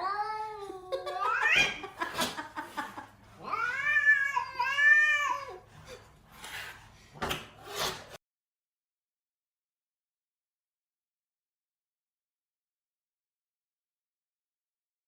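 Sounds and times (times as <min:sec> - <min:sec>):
cat yowling: 0:00.0 - 0:02.0, 0:03.4 - 0:05.7.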